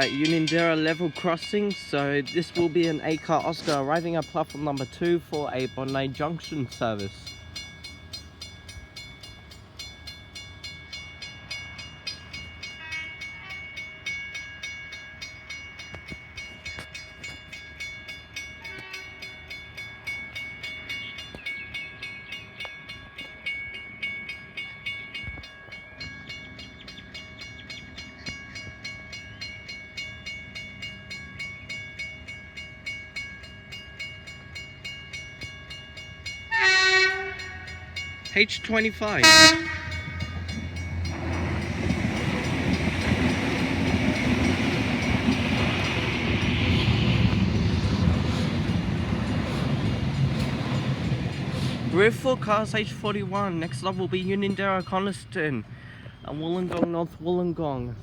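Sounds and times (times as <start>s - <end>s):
train horn blast: 0.0s - 0.6s, 36.5s - 37.9s, 39.1s - 40.6s
level crossing bells ringing: 0.0s - 47.8s, 49.8s - 56.4s.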